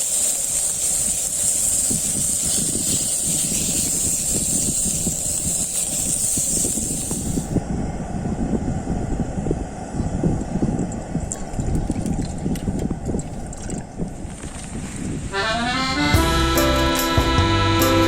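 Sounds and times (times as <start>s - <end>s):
steady high-pitched hiss: 0.0s - 7.7s
low rumbling noise: 0.0s - 16.0s.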